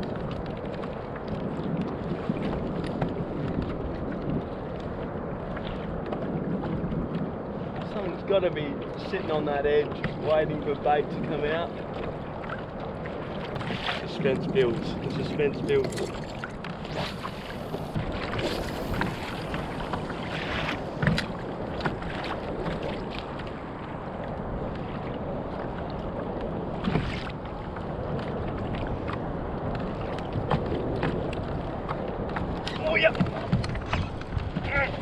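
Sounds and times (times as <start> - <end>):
water lapping: 0.0 - 35.0
wind buffeting microphone: 0.0 - 35.0
short knocks and splashes: 14.8 - 23.5.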